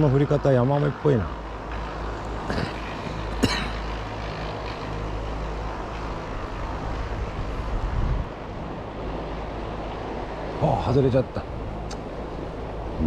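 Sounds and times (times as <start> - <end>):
wind rumble on microphone: 4.2 - 13.0.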